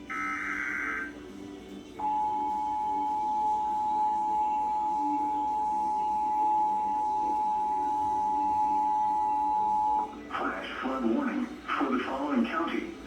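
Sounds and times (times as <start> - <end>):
two-tone alert signal: 0.1 - 1.1, 2.0 - 10.1.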